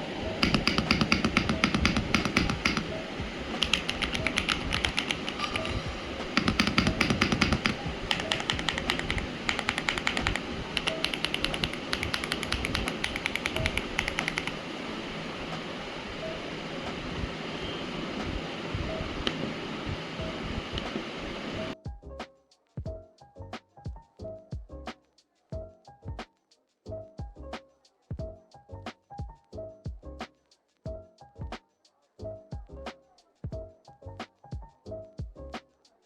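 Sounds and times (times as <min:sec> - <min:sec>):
background music: 0:00.0 - 0:36.0
rapid mechanical keyboard typing: 0:00.4 - 0:02.9, 0:03.6 - 0:14.6.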